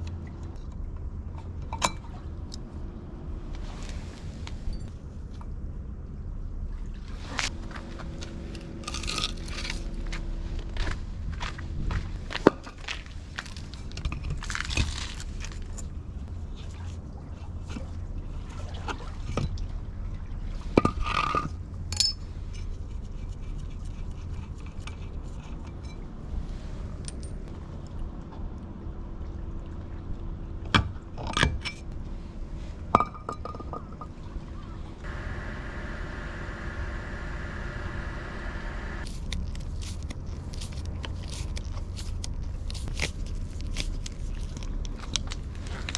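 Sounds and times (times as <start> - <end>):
steady low hum: 33.8 - 45.9
steady higher hum: 34.2 - 39.1.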